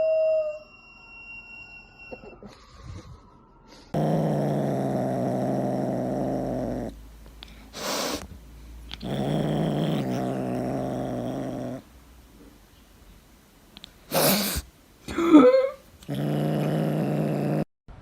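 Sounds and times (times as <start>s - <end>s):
cat growling: 3.9s - 7.0s, 8.9s - 11.9s, 14.1s - 17.7s
cat hissing: 4.0s - 8.3s, 14.1s - 14.7s.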